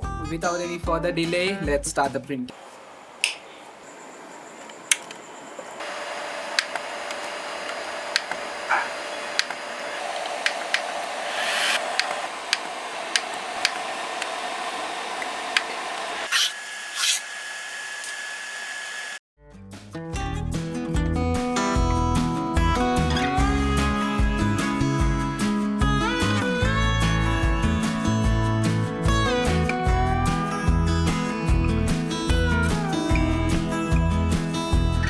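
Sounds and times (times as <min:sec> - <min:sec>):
fan hiss: 0:02.5 - 0:16.3
humming motor: 0:05.7 - 0:19.2
sharp printer clicks: 0:06.4 - 0:11.0, 0:11.6 - 0:14.4
guitar music: 0:19.4 - 0:35.0.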